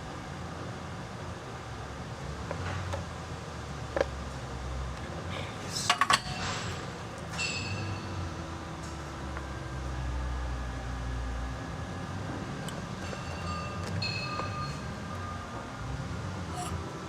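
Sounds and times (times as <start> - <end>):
shop equipment hum: 0.0 - 17.0
metallic ring: 6.1 - 9.0, 13.0 - 15.4, 16.5 - 16.9.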